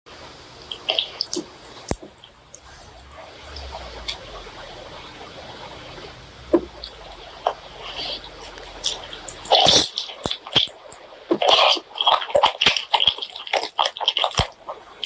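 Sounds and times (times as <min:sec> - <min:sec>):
low hum: 0:01.9 - 0:10.9.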